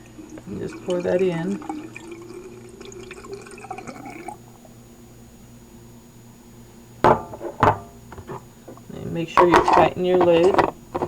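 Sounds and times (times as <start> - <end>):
water pouring into tank: 0.6 - 4.4
loud knocks: 7.0 - 8.4.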